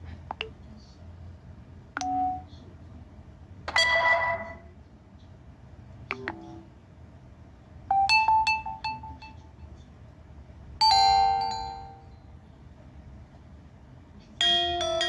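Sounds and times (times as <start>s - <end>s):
bright pinging notes: 7.9s - 9.4s, 10.8s - 12.2s, 14.4s - 15.0s
phone notification tones: 7.9s - 9.4s, 10.8s - 12.0s
ringing chime: 8.0s - 9.4s, 10.8s - 12.1s, 14.4s - 15.0s.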